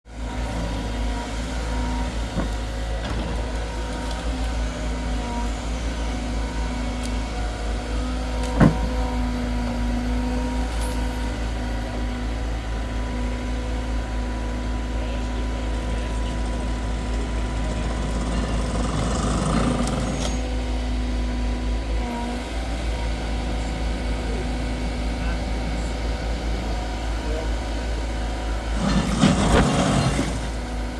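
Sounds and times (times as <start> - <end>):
excavator engine droning: 0.1 - 30.9
hydraulic whine: 0.4 - 11.6, 15.6 - 30.9.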